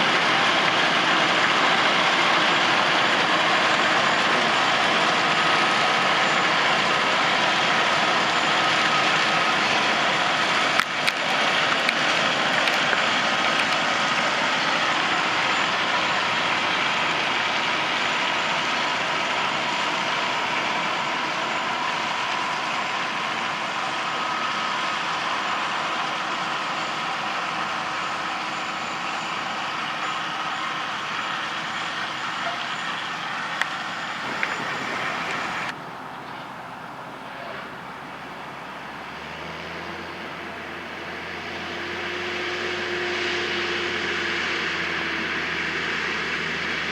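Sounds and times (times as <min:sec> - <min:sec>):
farm machinery din: 0:00.0 - 0:35.8
low engine hum: 0:34.0 - 0:46.9.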